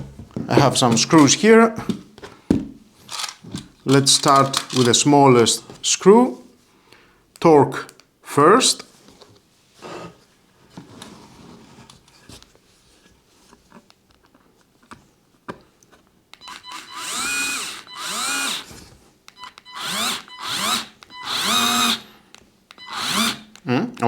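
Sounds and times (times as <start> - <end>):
faint handling noise: 0.0 - 5.9
cordless screwdriver whirring: 3.1 - 3.4, 16.4 - 18.8, 19.5 - 22.1, 22.8 - 23.6.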